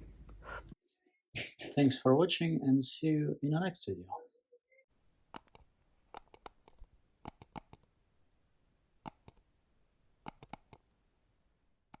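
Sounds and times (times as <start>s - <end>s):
faint clicks and taps: 9.1s - 9.4s.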